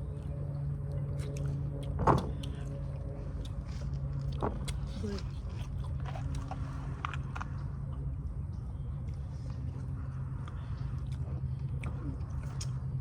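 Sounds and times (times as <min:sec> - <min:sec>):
steady low background hum: 0:00.0 - 0:13.0
chewing and mouth clicks: 0:00.1 - 0:13.0.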